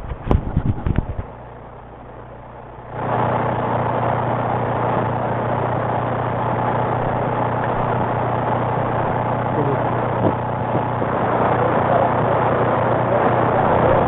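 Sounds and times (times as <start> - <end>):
steady low hum: 0.0 - 14.0
radio static: 2.9 - 14.0.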